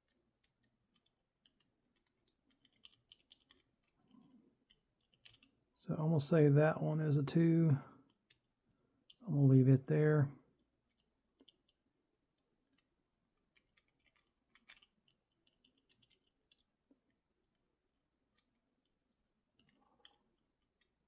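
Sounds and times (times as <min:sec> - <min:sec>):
padlock wheel clicking: 0:00.0 - 0:04.0.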